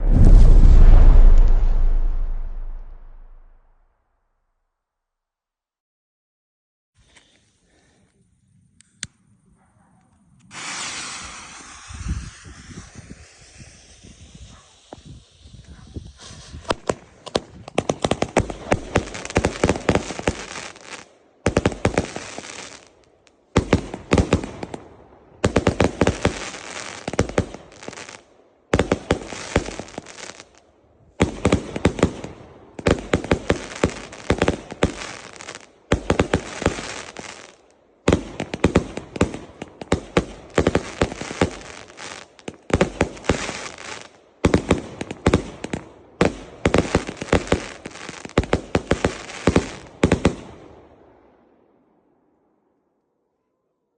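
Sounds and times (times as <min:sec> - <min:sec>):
firework crackling bangs: 0:00.0 - 0:03.6, 0:10.5 - 0:20.8.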